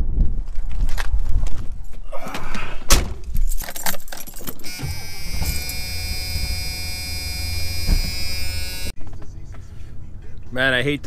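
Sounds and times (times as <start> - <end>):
keys jangling: 3.3 - 4.7
car engine starting and running: 4.7 - 8.9.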